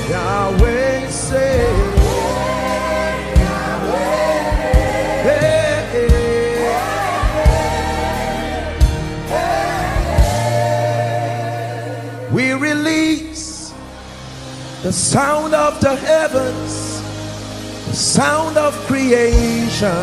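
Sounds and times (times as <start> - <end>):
gospel band playing: 0.0 - 20.0
steady drum beat: 1.5 - 11.6.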